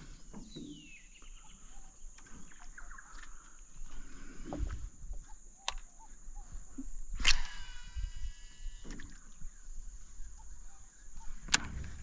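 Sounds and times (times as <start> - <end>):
bird calls: 0.0 - 4.0, 5.2 - 6.9, 9.0 - 11.5
high insect drone: 6.6 - 9.6.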